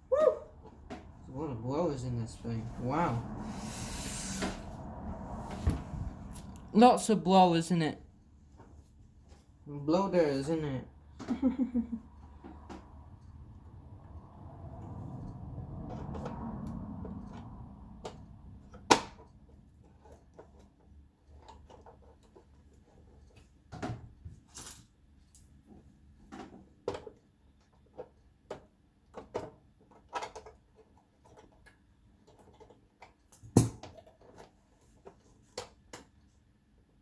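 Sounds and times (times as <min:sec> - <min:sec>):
parts and tools clicking and knocking: 0:26.2 - 0:36.3.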